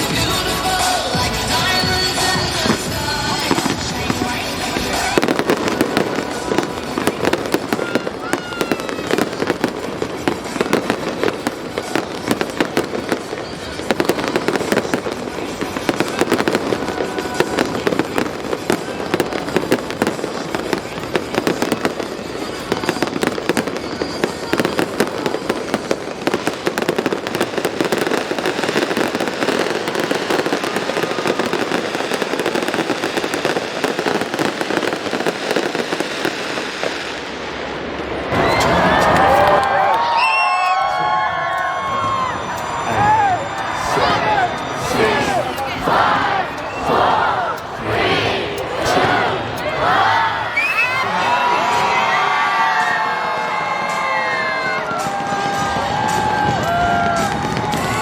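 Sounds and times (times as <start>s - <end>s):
music: 0.0s - 32.8s, 52.7s - 58.0s
fireworks bangs: 0.0s - 58.0s
fireworks popping and crackling: 0.0s - 58.0s.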